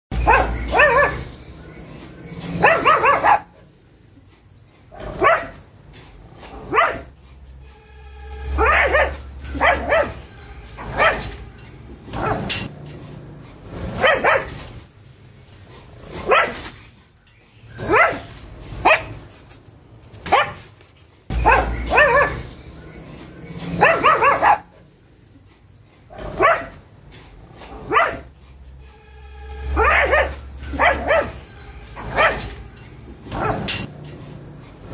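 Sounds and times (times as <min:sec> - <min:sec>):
dog barking: 0:00.1 - 0:01.4, 0:02.5 - 0:03.6, 0:04.9 - 0:05.6, 0:06.6 - 0:07.1, 0:08.5 - 0:10.2, 0:10.8 - 0:11.4, 0:12.2 - 0:12.7, 0:13.9 - 0:14.6, 0:16.2 - 0:16.7, 0:17.8 - 0:19.2, 0:20.2 - 0:20.6, 0:21.3 - 0:22.5, 0:23.8 - 0:24.8, 0:26.1 - 0:26.8, 0:27.7 - 0:28.3, 0:29.7 - 0:31.4, 0:32.0 - 0:32.6, 0:33.3 - 0:33.9.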